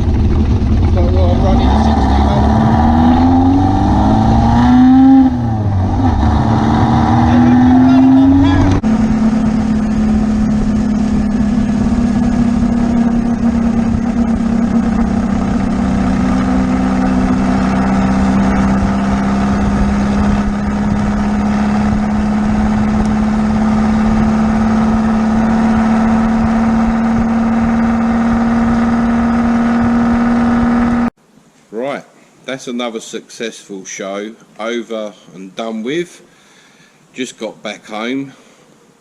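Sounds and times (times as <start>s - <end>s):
engine droning while driving: 0.0s - 31.2s.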